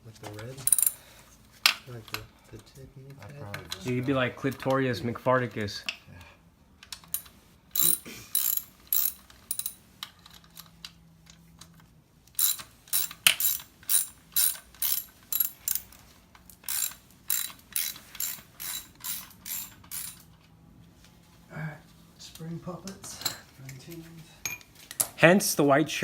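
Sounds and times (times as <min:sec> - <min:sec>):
ratchet wrench clicking: 0:00.7 - 0:01.0, 0:07.1 - 0:09.8, 0:12.4 - 0:20.3.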